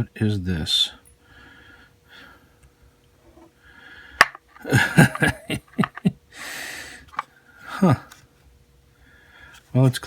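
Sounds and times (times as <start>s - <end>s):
man chuckling: 4.6s - 6.2s.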